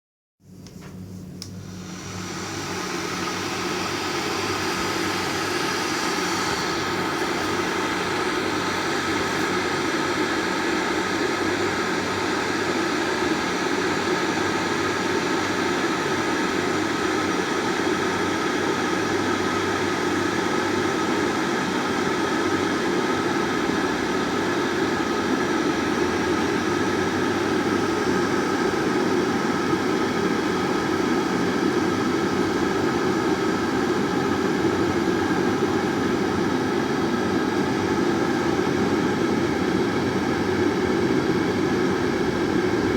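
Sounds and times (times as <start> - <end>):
electric kettle boiling: 0.6 - 42.9.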